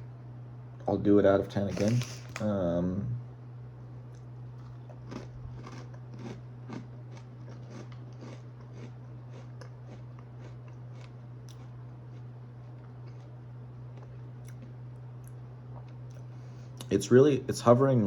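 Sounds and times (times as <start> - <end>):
steady low hum: 0.0 - 18.0
chewing crunchy rice crisps: 1.7 - 2.5, 4.0 - 16.9.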